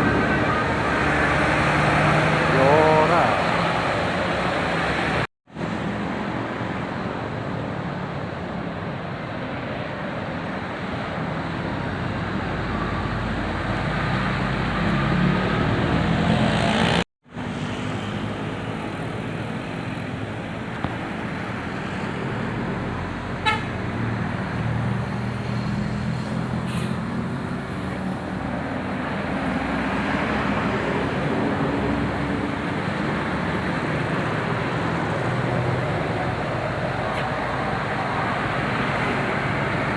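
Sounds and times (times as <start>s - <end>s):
buses passing: 0.0s - 39.9s
bus horn melody: 23.4s - 23.8s.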